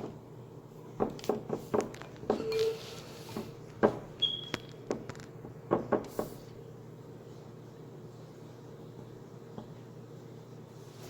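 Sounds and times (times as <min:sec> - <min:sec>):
objects knocking and clattering: 0:01.0 - 0:02.8, 0:03.4 - 0:06.3.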